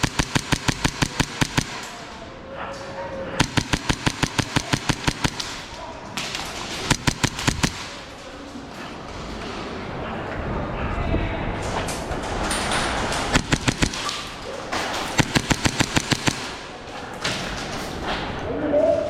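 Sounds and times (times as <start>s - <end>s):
airsoft guns firing bursts: 0.0s - 2.3s, 3.4s - 8.3s, 13.3s - 17.2s.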